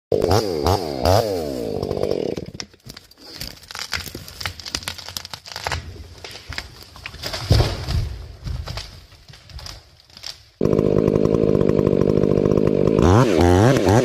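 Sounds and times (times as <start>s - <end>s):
chainsaw revving: 0.1s - 2.6s, 10.6s - 14.0s.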